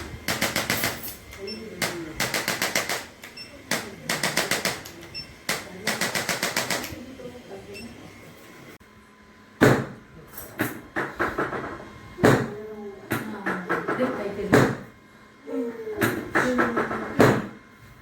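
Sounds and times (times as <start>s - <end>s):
rapid mechanical clicks: 0.0s - 7.0s.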